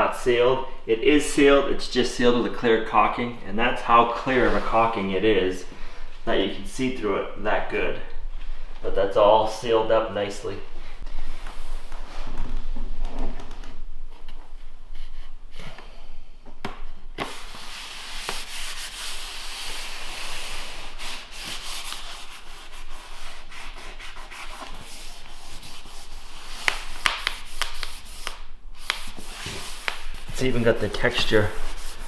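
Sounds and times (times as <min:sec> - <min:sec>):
rubbing and scraping on flooring: 0:03.8 - 0:05.4, 0:16.8 - 0:32.0.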